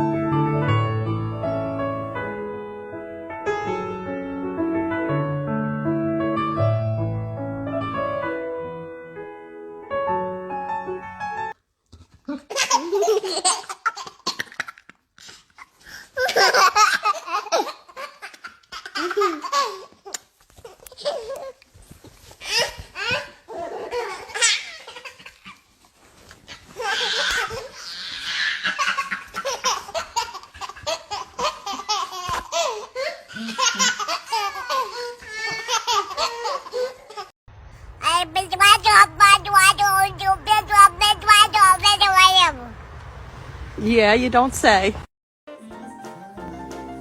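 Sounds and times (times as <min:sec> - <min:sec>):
baby laughing: 0:38.0 - 0:42.7.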